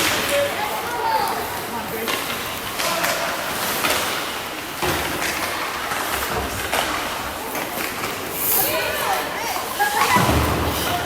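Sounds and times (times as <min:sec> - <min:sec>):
skates scraping on ice: 0:00.0 - 0:11.0.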